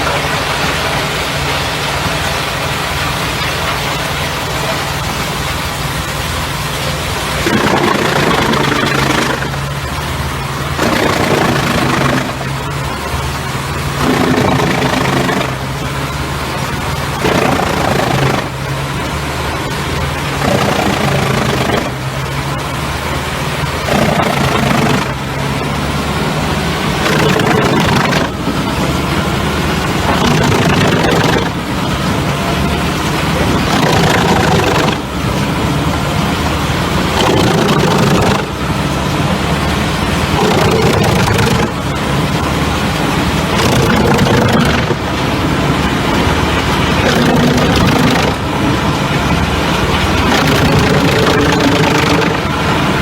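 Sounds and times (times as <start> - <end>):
wood chipper engine droning: 0.0 - 53.0
wood chipping noise: 10.4 - 12.7, 13.6 - 18.7, 20.2 - 22.3, 23.8 - 25.3, 50.2 - 52.6.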